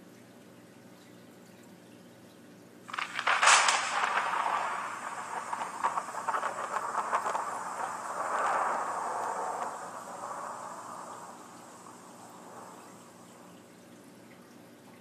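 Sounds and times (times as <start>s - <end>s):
rolling crackling thunder: 2.9s - 13.7s
thunder crack: 2.9s - 13.7s.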